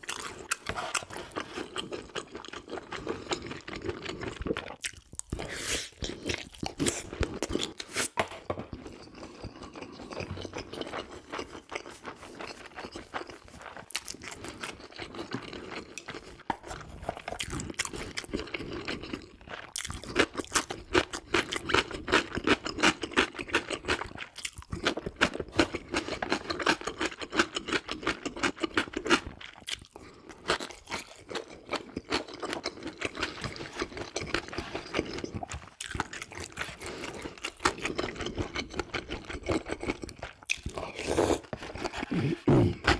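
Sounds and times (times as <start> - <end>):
chewing and wet mouth sounds: 0.0 - 7.8, 8.7 - 42.9.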